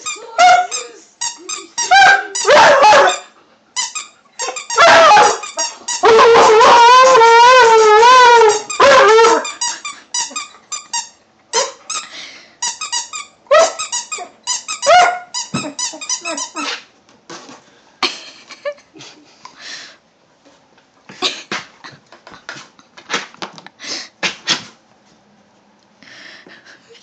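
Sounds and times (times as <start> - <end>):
dog chewing squeaky toy: 0.0 - 16.8.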